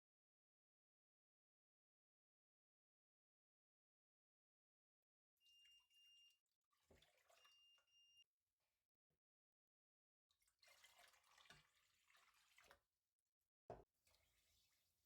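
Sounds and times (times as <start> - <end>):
faint running water: 5.5 - 7.9, 10.3 - 12.9, 13.7 - 15.0.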